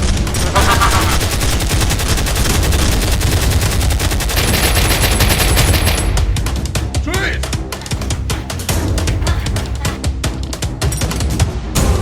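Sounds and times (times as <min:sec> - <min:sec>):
rapid machine-gun fire: 0:00.0 - 0:06.3.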